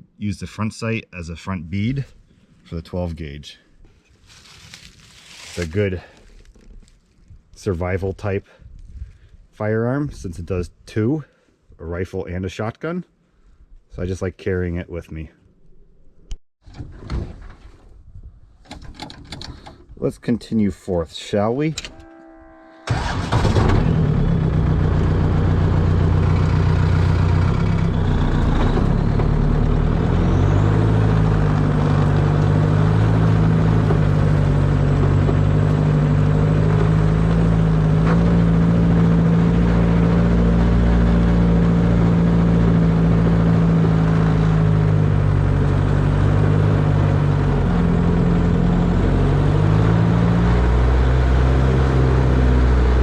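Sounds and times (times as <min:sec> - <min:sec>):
car engine revving while driving: 0:23.5 - 0:53.0.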